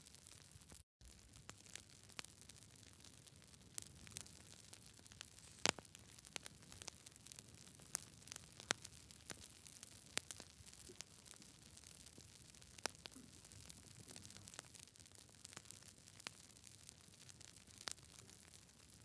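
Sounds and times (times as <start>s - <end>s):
campfire crackling and popping: 0.1s - 19.0s
faint steady hiss: 1.0s - 19.0s.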